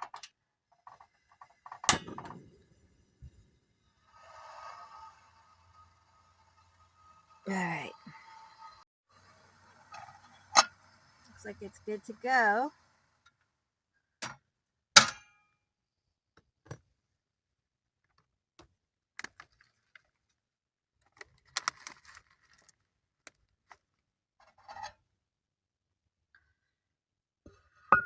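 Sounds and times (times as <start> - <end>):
cooking gear clicks and knocks: 21.0 - 23.8.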